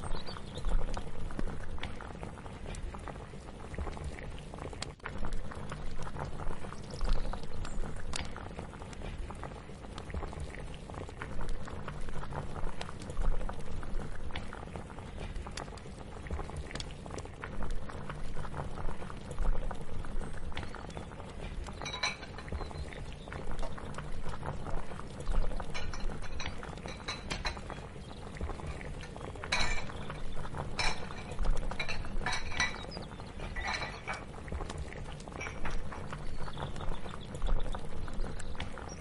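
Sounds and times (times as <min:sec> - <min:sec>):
liquid boiling in a pot: 0:00.0 - 0:39.0.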